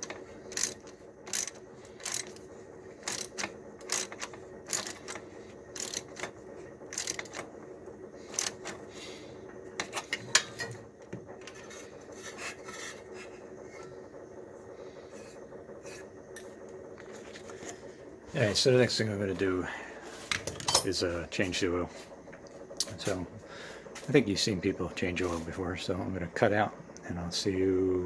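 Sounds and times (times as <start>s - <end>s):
hand tools clicking on metal: 0.0s - 7.5s, 8.3s - 8.8s
steady low hum: 0.0s - 28.0s.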